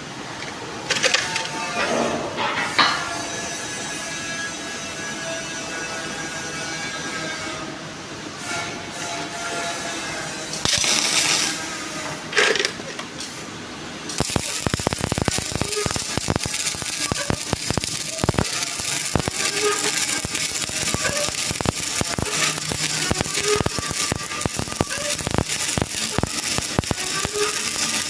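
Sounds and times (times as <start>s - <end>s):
electric arc welding crackling: 10.2s - 13.2s, 14.0s - 28.0s.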